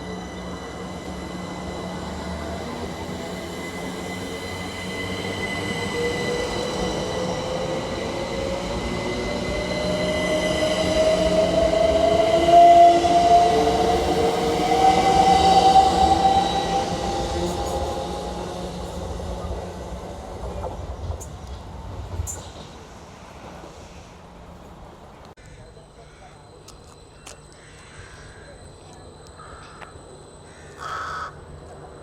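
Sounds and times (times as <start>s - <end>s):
train drive whine rising: 0.0s - 25.4s
train running on rails: 0.0s - 32.0s.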